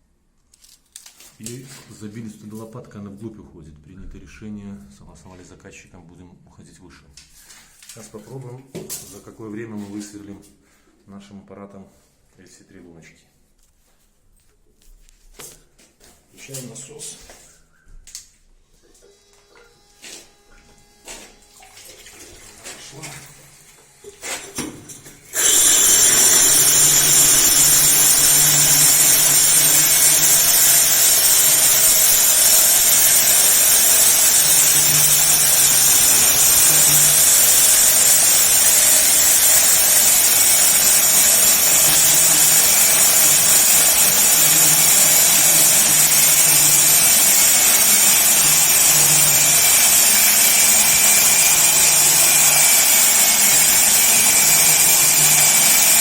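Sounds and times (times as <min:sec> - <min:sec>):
core drill boring concrete: 0:22.6 - 0:56.0.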